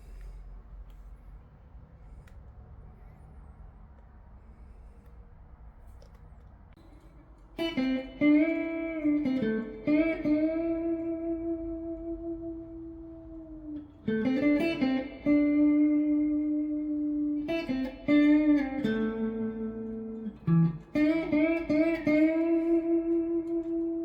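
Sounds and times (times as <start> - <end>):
electric guitar lead line: 7.5 - 24.0.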